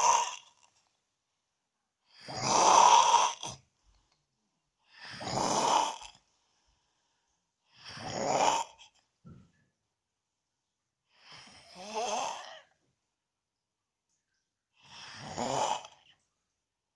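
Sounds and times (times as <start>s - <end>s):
person snoring loudly: 0.0s - 0.6s, 2.1s - 3.6s, 4.9s - 6.2s, 7.8s - 8.9s, 11.3s - 12.7s, 14.8s - 16.1s.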